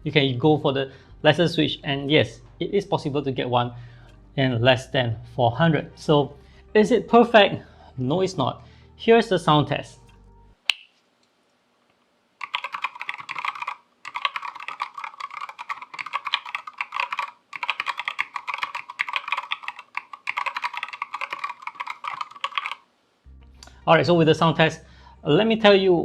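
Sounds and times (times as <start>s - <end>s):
mechanical keyboard typing: 12.4s - 22.8s.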